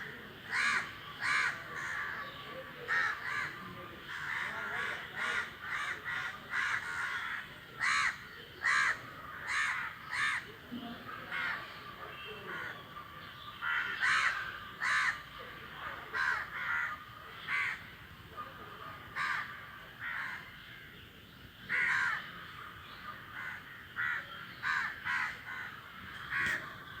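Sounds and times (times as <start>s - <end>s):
crows cawing: 0.4s - 10.5s, 13.6s - 15.3s, 16.0s - 17.9s, 19.0s - 20.8s, 21.7s - 22.5s, 23.1s - 26.9s.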